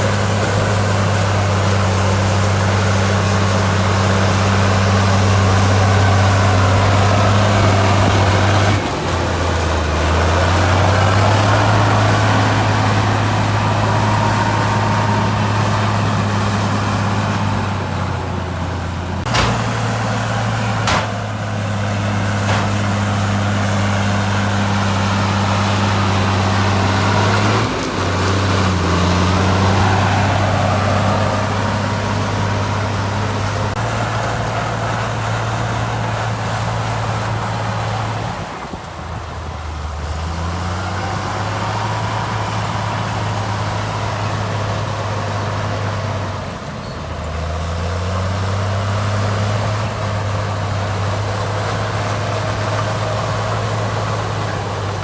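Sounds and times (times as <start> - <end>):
heavy diesel engine running: 0.0 - 55.0
sharp metallic knocks: 19.2 - 23.5.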